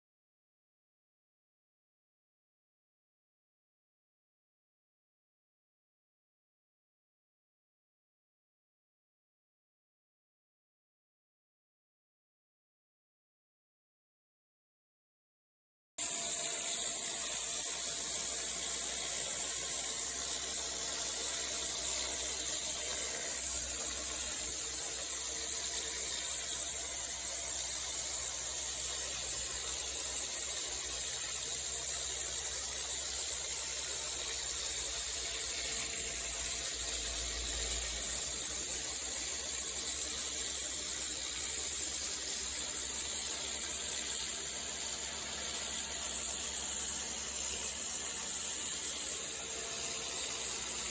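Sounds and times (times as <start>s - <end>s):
pressure washer spraying: 16.0s - 25.2s.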